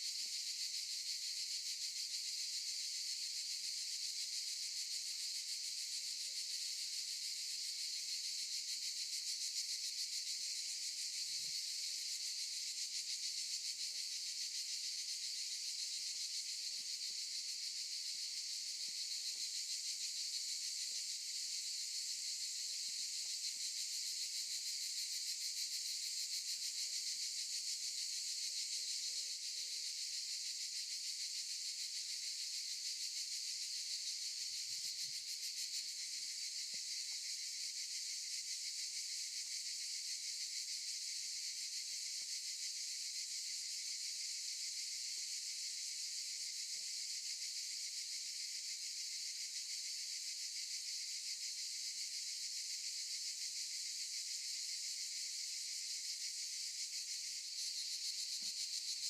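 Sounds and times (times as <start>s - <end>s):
cicadas buzzing: 10.9s - 52.2s, 52.9s - 59.0s.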